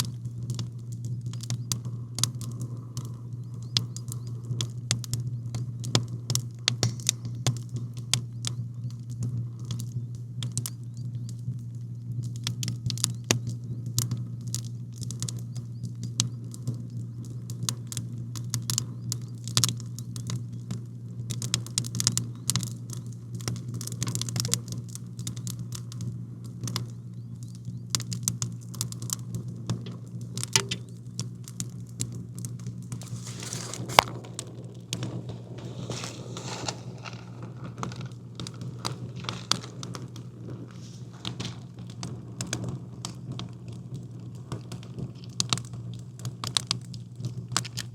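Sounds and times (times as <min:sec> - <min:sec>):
steady low hum: 0:00.0 - 0:21.3, 0:22.0 - 0:47.6
campfire crackling and popping: 0:00.0 - 0:47.9
fire hissing flare-up: 0:32.7 - 0:42.6.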